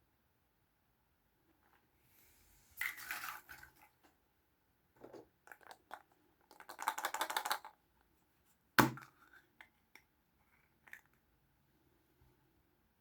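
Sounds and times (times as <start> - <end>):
plastic toys clicking and rattling: 5.5 - 7.8.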